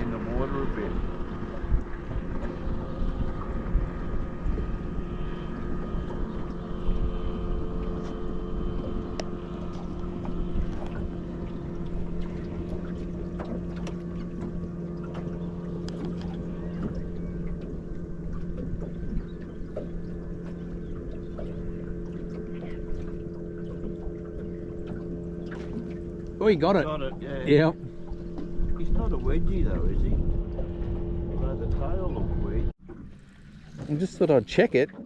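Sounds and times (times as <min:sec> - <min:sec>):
wind rumbling on microphone: 0:00.0 - 0:34.6
boat motor humming: 0:00.0 - 0:35.0
light ticks: 0:09.1 - 0:09.4, 0:15.1 - 0:17.0.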